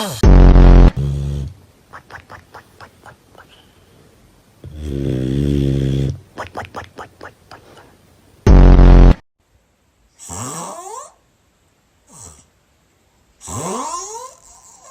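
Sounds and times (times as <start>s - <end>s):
loud buzzing snore: 0.0s - 1.6s, 4.6s - 6.2s, 8.5s - 9.2s, 10.2s - 11.2s, 12.1s - 12.5s, 13.4s - 14.9s.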